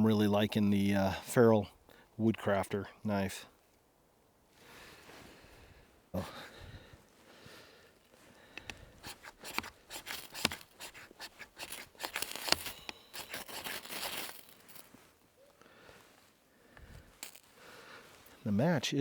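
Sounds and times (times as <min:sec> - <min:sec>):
tinder crinkling and crackling: 0:06.8 - 0:19.0
ferro rod scraping: 0:08.9 - 0:15.0.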